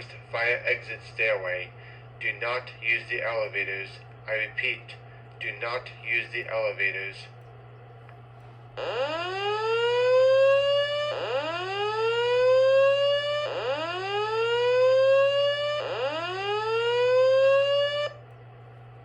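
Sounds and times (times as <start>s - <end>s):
fire alarm whoop tone: 8.8s - 18.2s.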